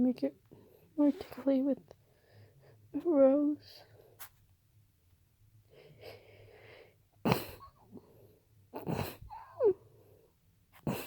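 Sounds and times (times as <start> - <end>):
person sniffing: 10.8 - 11.0.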